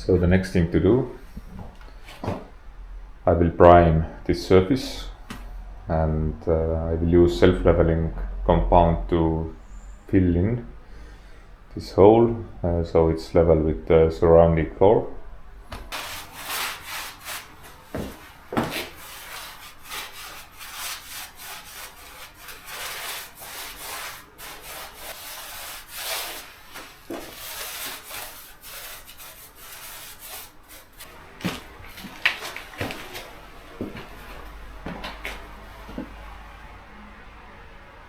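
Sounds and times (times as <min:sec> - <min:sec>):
brush scrubbing floor: 0:15.7 - 0:36.4.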